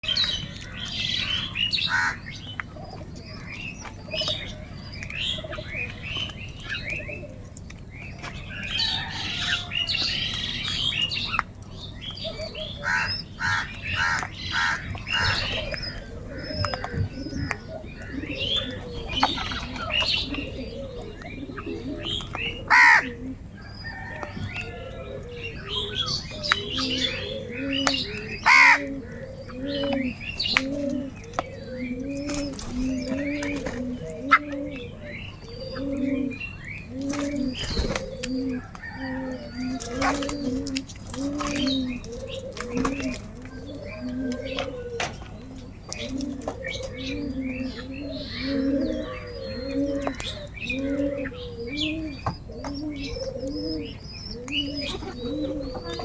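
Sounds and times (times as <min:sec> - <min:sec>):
crows cawing: 0:01.8 - 0:02.3, 0:12.7 - 0:17.0, 0:22.7 - 0:23.2, 0:28.4 - 0:29.9.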